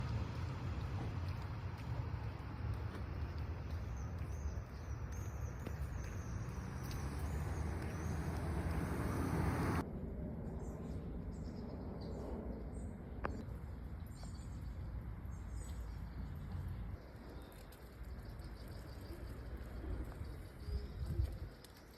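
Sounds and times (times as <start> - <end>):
traffic noise: 0.0 - 10.1, 13.4 - 21.9
small birds chirping: 0.7 - 9.8, 14.0 - 21.9.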